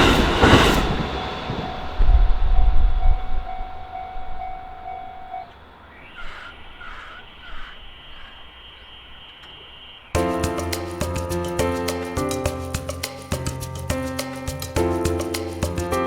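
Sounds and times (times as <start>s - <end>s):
faint steady high tone: 0.0s - 6.3s
train rumble: 0.0s - 8.2s
level crossing bell ringing: 3.4s - 5.6s
crow cawing: 5.9s - 9.4s.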